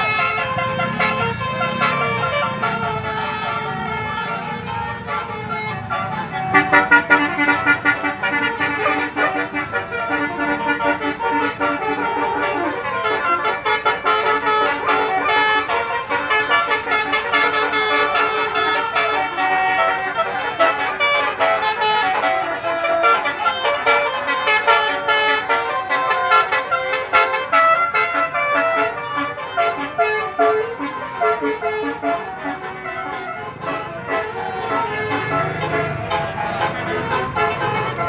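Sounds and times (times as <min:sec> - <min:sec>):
bus horn playing a tune: 0:00.0 - 0:38.0.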